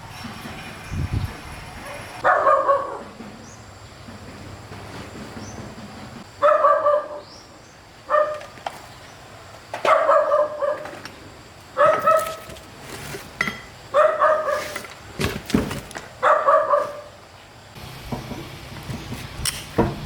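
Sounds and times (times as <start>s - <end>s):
dog barking: 1.9s - 3.2s, 6.4s - 7.2s, 8.1s - 8.5s, 9.8s - 11.0s, 11.8s - 12.4s, 13.9s - 14.7s, 16.2s - 17.2s.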